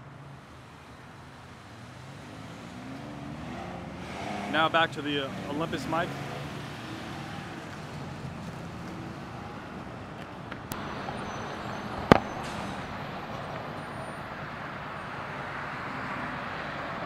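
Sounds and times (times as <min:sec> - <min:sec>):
road traffic passing: 0:00.0 - 0:17.0
sharp knock: 0:12.1 - 0:12.6.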